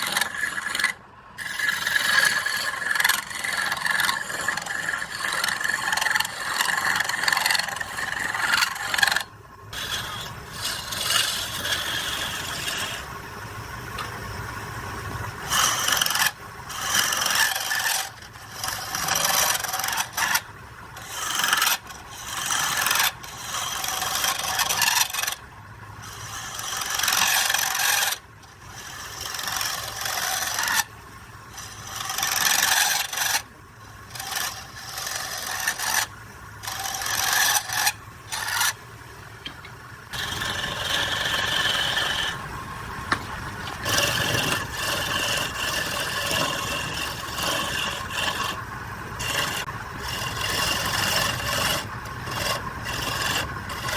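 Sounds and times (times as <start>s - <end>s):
faint steady hum: 0.0s - 53.9s
tool scraping wood on a lathe: 0.0s - 53.9s.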